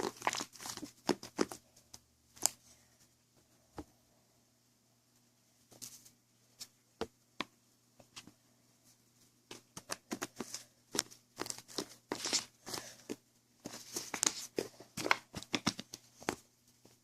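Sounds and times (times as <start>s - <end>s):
clicks taps and rustles of handling: 9.5s - 17.0s.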